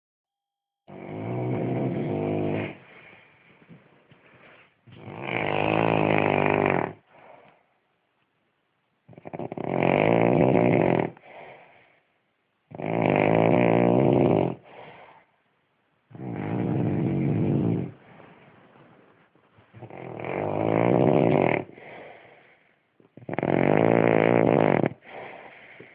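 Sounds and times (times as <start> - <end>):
loud snoring: 0.9 - 2.9, 4.9 - 7.1, 9.1 - 11.4, 12.7 - 14.9, 16.1 - 18.1, 19.8 - 22.2, 23.2 - 25.9
quiet breath: 1.6 - 5.1, 6.9 - 8.0, 11.1 - 12.6, 14.5 - 19.8, 21.6 - 23.2, 24.9 - 25.9.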